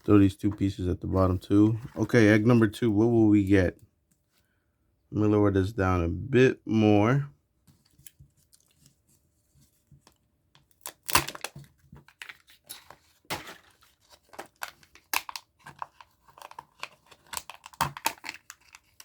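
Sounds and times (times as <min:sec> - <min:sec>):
wrapper crinkling and tearing: 0:10.7 - 0:19.0.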